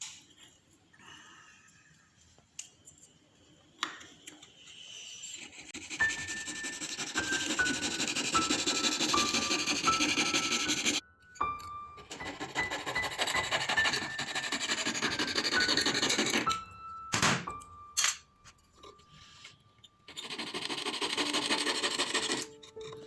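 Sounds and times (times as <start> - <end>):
metal being filed: 4.4 - 16.6, 18.9 - 23.0.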